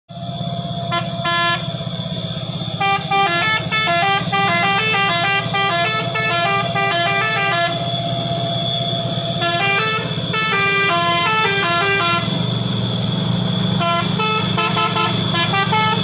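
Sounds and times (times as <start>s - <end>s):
truck engine running: 0.1s - 16.0s
multi-tone truck horn: 0.7s - 12.6s, 13.6s - 16.0s.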